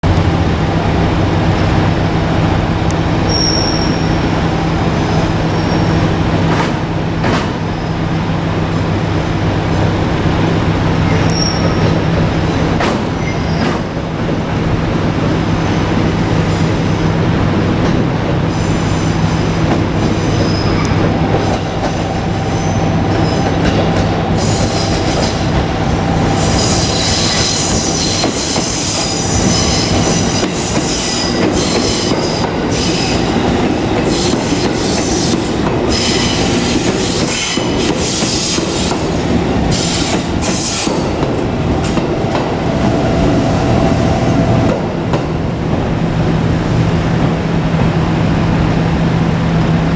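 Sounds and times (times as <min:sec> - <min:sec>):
train humming: 0:00.0 - 0:49.9
wheel squeals: 0:11.2 - 0:11.9
high-pitched squeal and hiss: 0:26.2 - 0:33.2.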